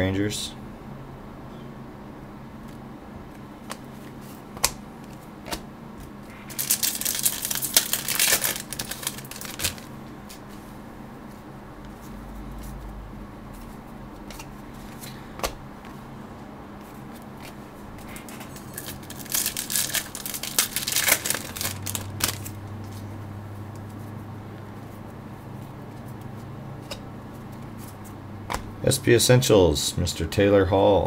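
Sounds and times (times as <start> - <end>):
steady low hum: 0.0 - 31.0
foil wrapper crinkling: 6.4 - 10.4, 18.0 - 22.6.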